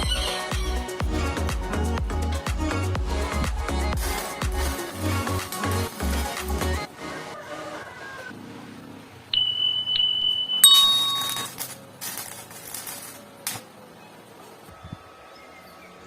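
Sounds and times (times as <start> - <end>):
metal struck ringing: 10.6 - 11.5.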